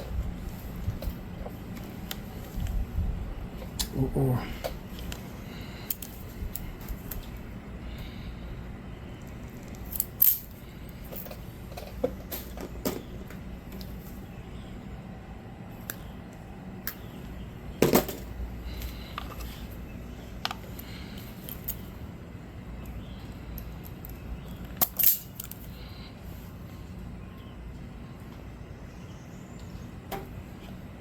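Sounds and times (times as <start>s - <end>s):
hand tools clicking and clinking: 9.6s - 13.0s, 23.6s - 25.7s.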